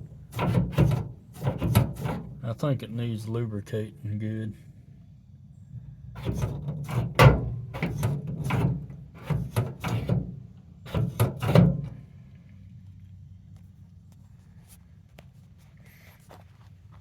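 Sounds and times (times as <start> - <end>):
metal toolbox clanking and rattling: 0.3 - 2.4, 6.2 - 12.0.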